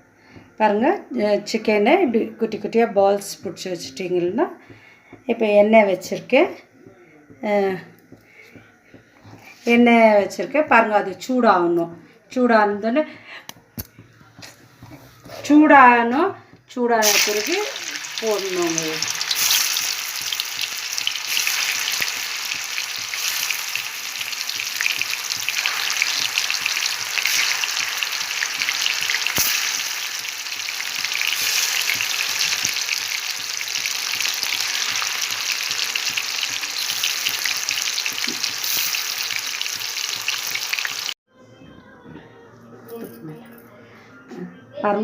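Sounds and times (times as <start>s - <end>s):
meatballs deep-frying in oil: 17.0s - 41.2s.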